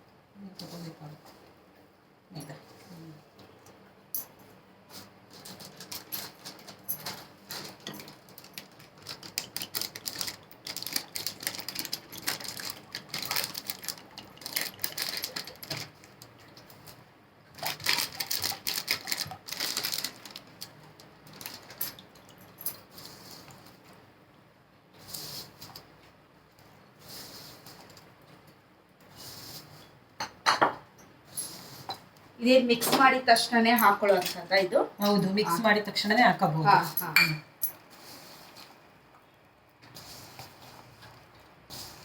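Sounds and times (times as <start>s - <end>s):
batter mixed by hand: 37.8s - 42.0s.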